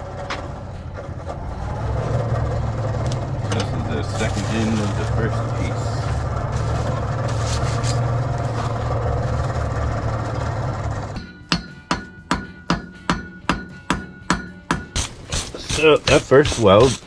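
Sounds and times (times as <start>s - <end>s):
forge roaring: 0.0s - 11.2s
hammer striking steel on anvil: 11.2s - 17.0s.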